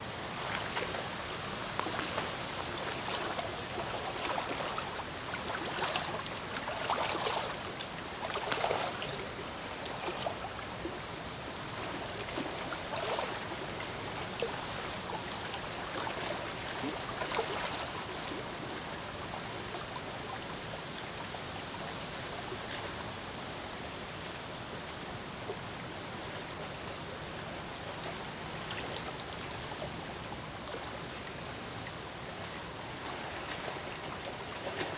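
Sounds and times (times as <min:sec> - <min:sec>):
waves lapping on shore: 0:00.0 - 0:34.9.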